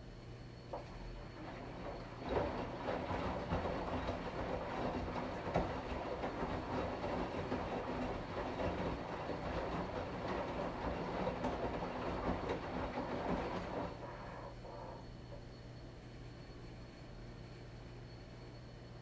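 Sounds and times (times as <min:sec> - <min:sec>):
washing machine hum: 0:00.6 - 0:19.0
washing machine rattling clatter: 0:00.7 - 0:15.0.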